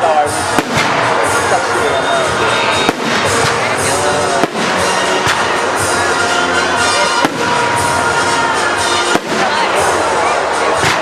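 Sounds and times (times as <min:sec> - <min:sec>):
fireworks crackling: 0:00.0 - 0:11.0
sharp firework bangs: 0:00.4 - 0:01.7, 0:02.7 - 0:06.0, 0:07.1 - 0:10.1.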